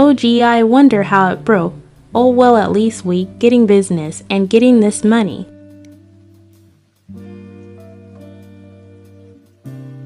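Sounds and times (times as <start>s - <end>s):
plucked guitar chord ringing: 1.0s - 10.0s.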